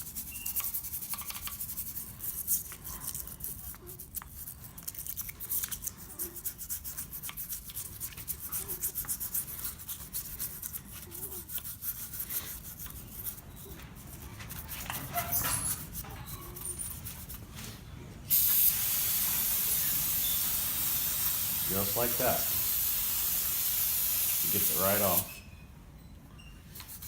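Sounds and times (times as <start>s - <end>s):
aerosol spray hiss: 18.3s - 25.4s.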